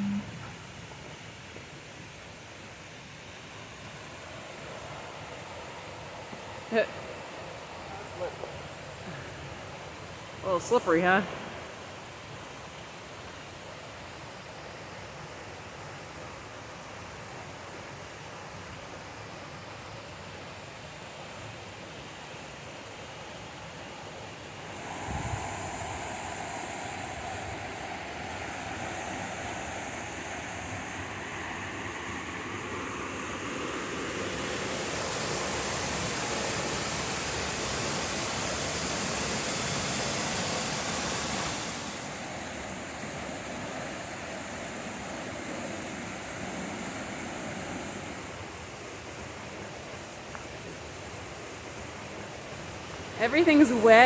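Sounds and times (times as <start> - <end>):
waterfall rushing: 24.6 - 54.0.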